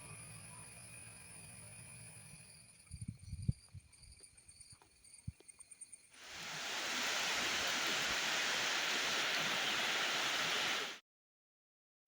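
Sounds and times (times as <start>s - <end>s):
faint insect chirring: 0.0s - 6.9s
steady rushing noise: 6.2s - 11.0s.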